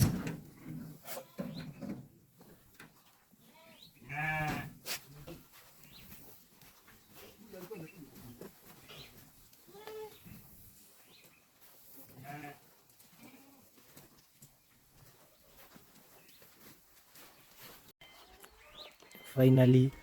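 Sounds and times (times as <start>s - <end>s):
livestock bleating: 3.4s - 4.7s, 12.2s - 12.6s.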